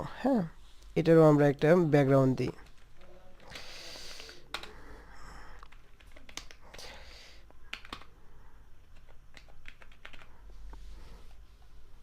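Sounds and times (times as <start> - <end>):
keyboard keystrokes clicking: 5.6 - 6.8, 7.7 - 8.1, 8.9 - 10.3.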